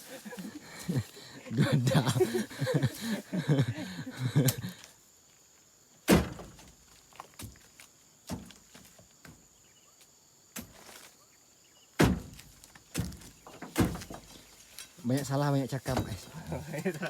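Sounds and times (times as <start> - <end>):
heavy thuds and knocks: 6.1 - 6.7, 12.0 - 14.4.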